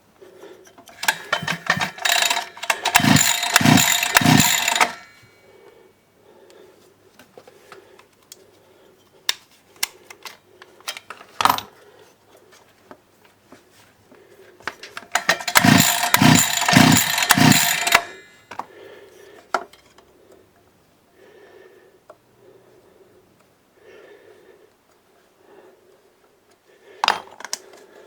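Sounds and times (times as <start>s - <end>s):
recoil starter cranking: 0.9s - 5.2s, 15.2s - 18.3s.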